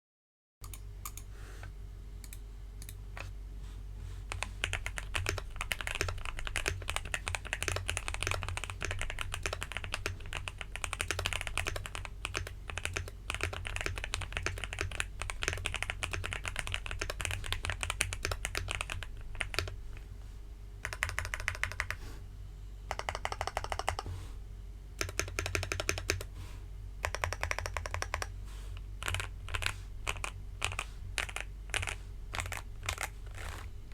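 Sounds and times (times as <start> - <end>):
mechanical keyboard typing: 4.3 - 19.8, 20.8 - 22.0, 22.9 - 24.0, 25.0 - 26.3, 27.0 - 28.3, 29.0 - 33.6.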